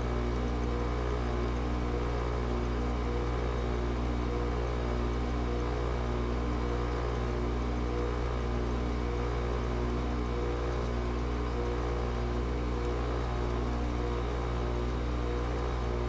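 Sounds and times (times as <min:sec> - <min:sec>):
air conditioner compressor hum: 0:00.0 - 0:16.0
air conditioner fan noise: 0:00.0 - 0:16.0.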